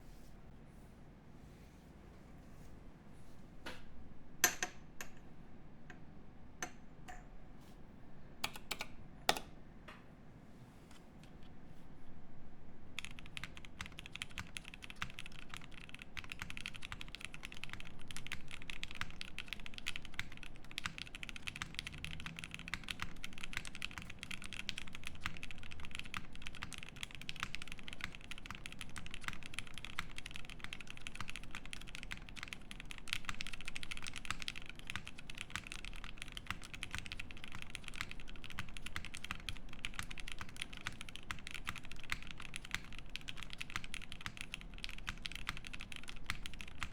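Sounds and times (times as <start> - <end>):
fast mechanical keyboard typing: 8.4 - 9.4, 13.0 - 46.9.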